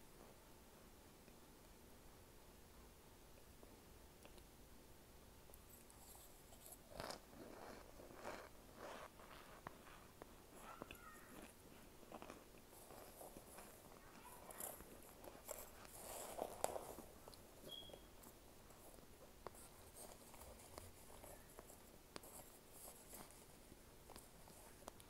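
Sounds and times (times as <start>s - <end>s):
chewing mouth sounds: 5.6s - 14.2s.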